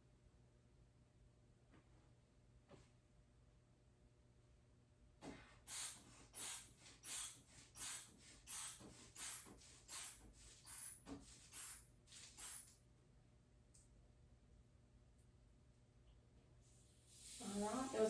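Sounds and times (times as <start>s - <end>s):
blood pressure bulb squeezing: 5.7s - 12.7s
short hiss of air: 5.7s - 12.7s, 16.8s - 18.0s.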